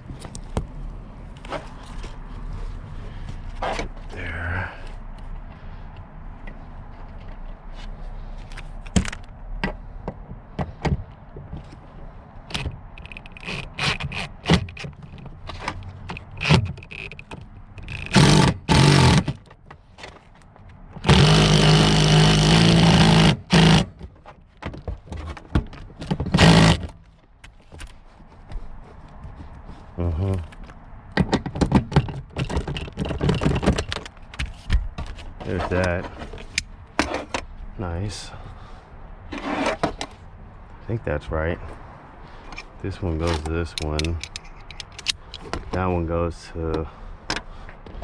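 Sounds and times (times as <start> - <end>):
metal clicks and scrapes: 12.5 - 23.9, 42.4 - 45.7
power tool bursts: 18.1 - 19.3, 21.0 - 23.9, 26.4 - 26.8.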